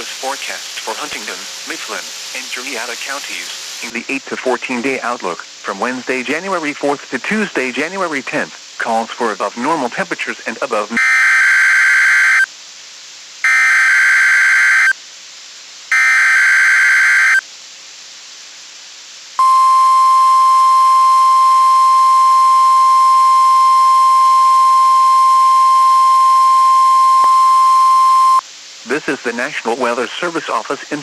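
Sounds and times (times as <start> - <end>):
steady warning alarm tone: 11.0 - 12.5, 13.5 - 14.9, 15.9 - 17.4, 19.4 - 28.4.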